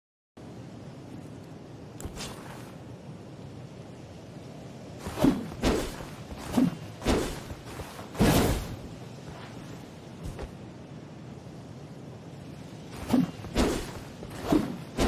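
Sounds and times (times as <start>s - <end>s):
sword swishing through air: 2.0s - 2.8s, 5.0s - 10.6s, 12.9s - 15.0s.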